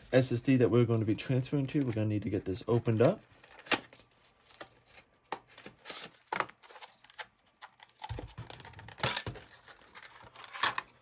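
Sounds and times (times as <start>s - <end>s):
packaging tearing and crinkling: 5.8s - 11.0s.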